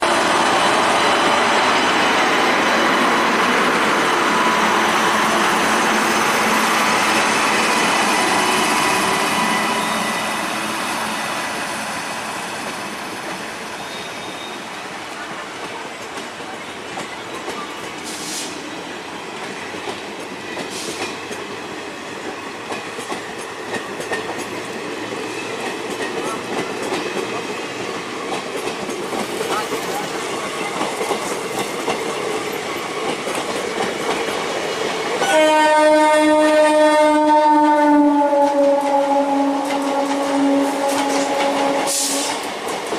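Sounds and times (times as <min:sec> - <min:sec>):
train wheels rushing on rails: 0:00.0 - 0:42.9
high-pitched squeals: 0:04.2 - 0:11.9.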